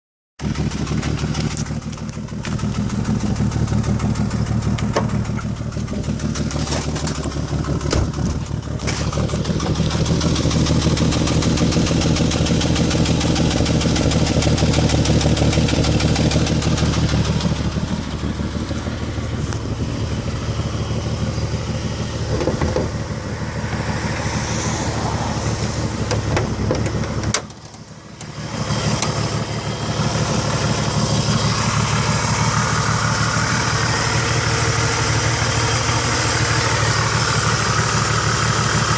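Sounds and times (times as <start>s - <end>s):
car engine running: 0.4s - 38.9s.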